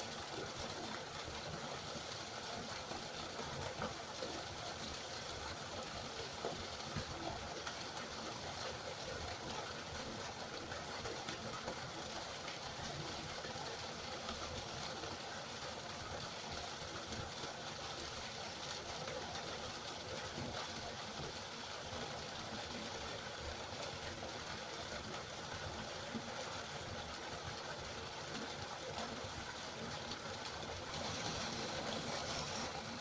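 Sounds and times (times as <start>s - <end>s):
river water rushing over stones: 22.7s - 33.0s.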